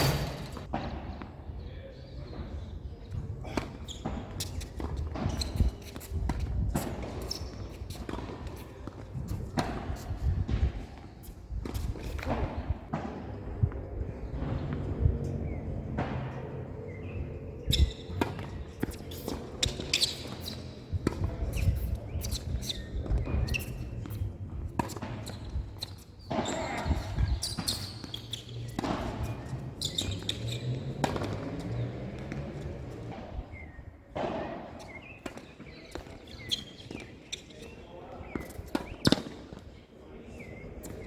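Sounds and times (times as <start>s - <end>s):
racket striking tennis ball: 0.0s - 1.2s, 15.5s - 37.1s
ball bouncing on court: 3.4s - 10.9s, 17.7s - 33.3s, 34.2s - 37.1s.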